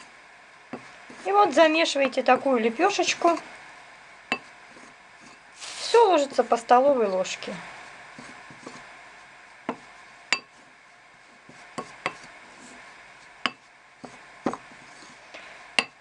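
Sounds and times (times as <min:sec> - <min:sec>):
spoon scraping a bowl: 0:04.3 - 0:05.9, 0:08.2 - 0:08.9, 0:11.4 - 0:12.8.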